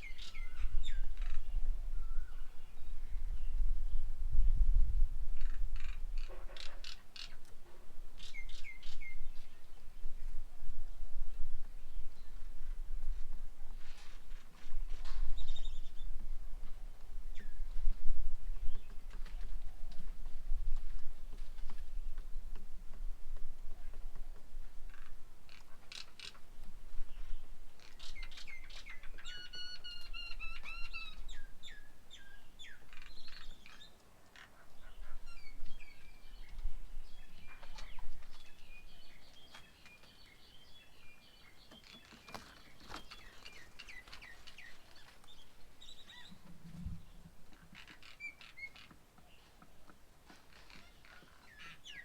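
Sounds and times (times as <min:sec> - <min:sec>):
birds chirping and whistling: 0:27.2 - 0:33.9, 0:34.8 - 0:46.4, 0:47.8 - 0:49.5, 0:50.5 - 0:52.0.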